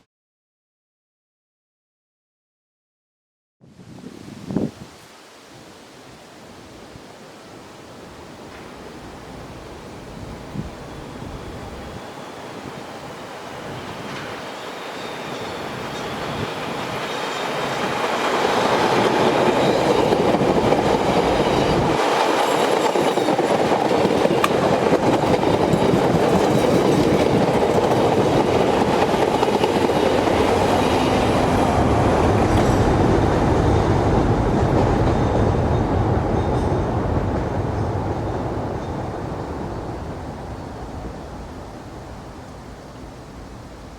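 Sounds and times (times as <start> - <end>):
train wheels on rails: 8.4 - 42.5.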